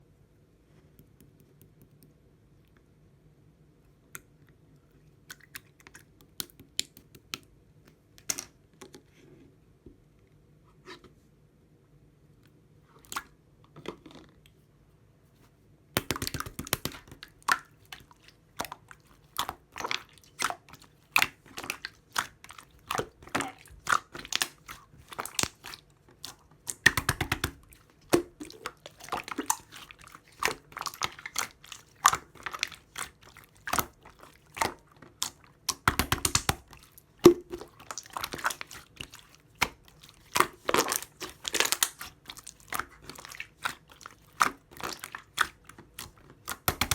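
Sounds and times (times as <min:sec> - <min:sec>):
person chewing grapes: 0:17.2 - 0:46.8.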